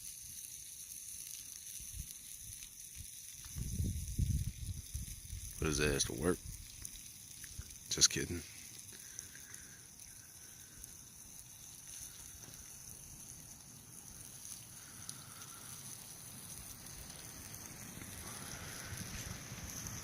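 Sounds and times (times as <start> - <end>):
wind rumbling on microphone: 3.4 - 6.8
wind gusting through forest: 3.5 - 6.8, 16.7 - 20.0.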